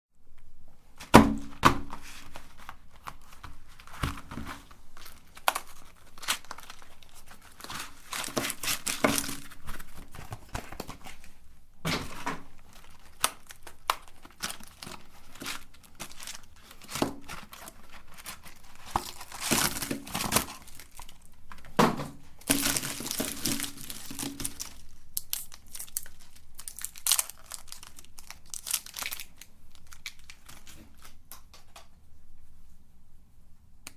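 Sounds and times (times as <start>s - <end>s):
plastic wrappers crinkling and tearing: 1.8s - 31.9s.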